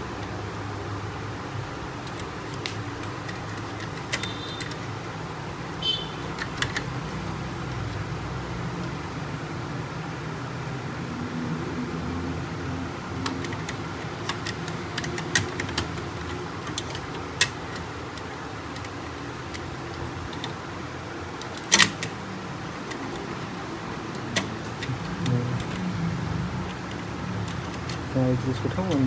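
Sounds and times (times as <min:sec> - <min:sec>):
plastic clicks and knocks: 0:02.0 - 0:08.0, 0:13.2 - 0:20.7
steady low hum: 0:07.5 - 0:29.0.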